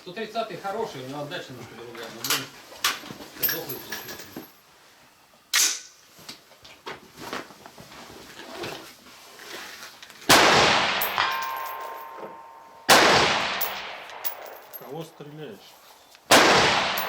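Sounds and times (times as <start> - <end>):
rifle shots with echo: 10.3 - 14.8, 16.3 - 17.0.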